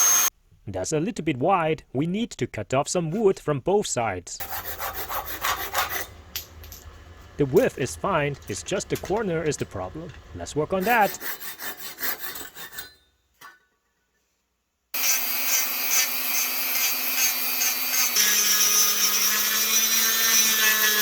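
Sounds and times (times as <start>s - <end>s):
rotary tool whining: 0.0s - 0.3s, 15.0s - 21.0s
rubbing strokes on wood: 4.4s - 6.1s.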